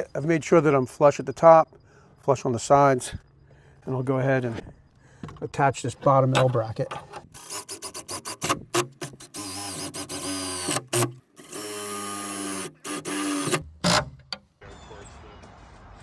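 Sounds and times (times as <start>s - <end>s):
cordless drill driving screw: 7.4s - 14.3s
short clicks of bit and hardware: 7.4s - 14.5s.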